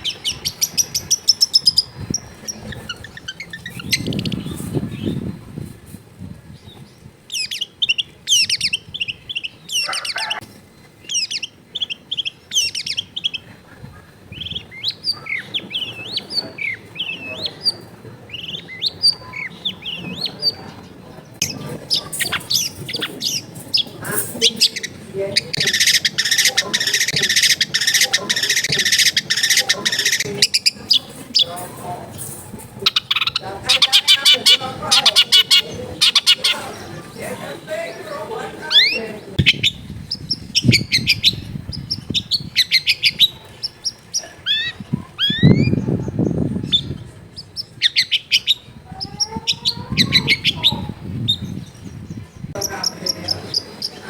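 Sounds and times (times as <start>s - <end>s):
bird chattering song: 0.0s - 5.6s, 6.5s - 54.0s
harsh rasping bird call: 9.6s - 10.4s, 21.4s - 32.2s, 32.8s - 39.7s.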